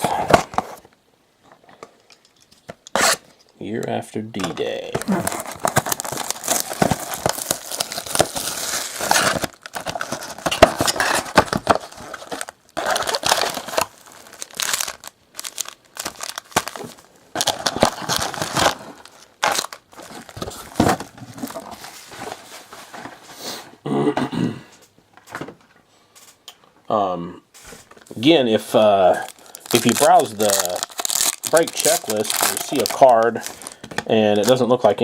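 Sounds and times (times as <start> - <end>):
card pack wrappers crinkling: 4.4 - 23.2, 27.6 - 35.0.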